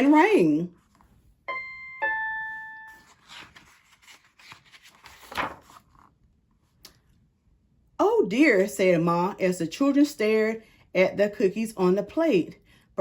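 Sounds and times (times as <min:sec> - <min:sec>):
two-note doorbell chime: 0:01.5 - 0:03.1.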